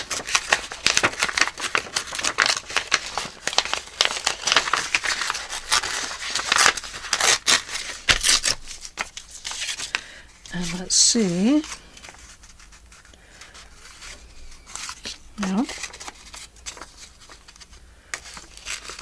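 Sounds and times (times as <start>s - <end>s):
paper tearing: 0.0s - 9.9s.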